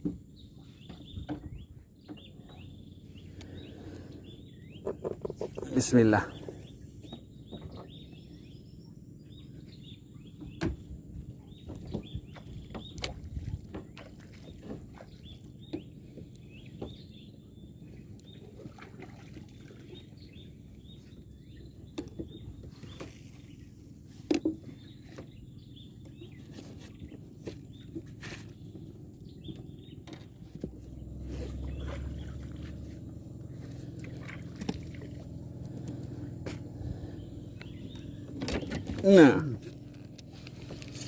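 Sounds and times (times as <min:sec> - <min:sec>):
steady low rumble: 0:30.6 - 0:41.0.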